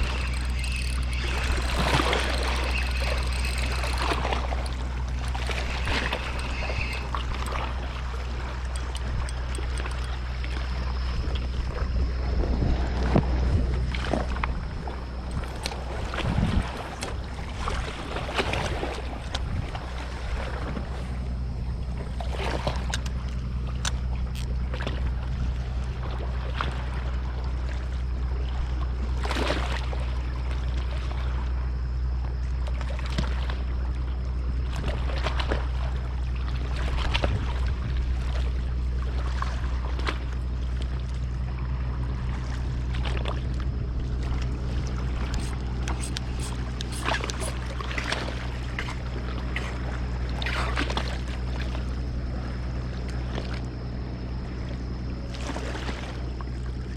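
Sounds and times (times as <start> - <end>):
boat engine humming: 0.0 - 56.9
water splashing: 44.3 - 51.8.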